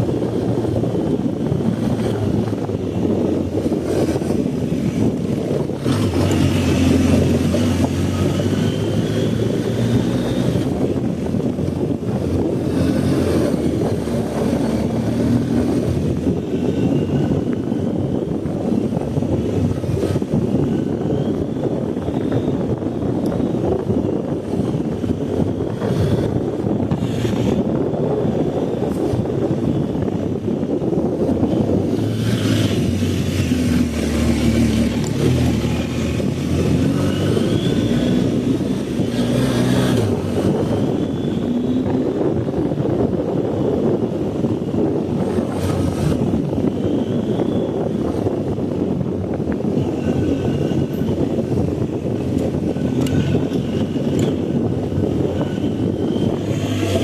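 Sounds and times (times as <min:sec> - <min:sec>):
motorcycle engine accelerating: 0:00.0 - 0:57.0
wind noise on microphone: 0:00.0 - 0:57.0
motorcycle engine running: 0:29.7 - 0:48.2.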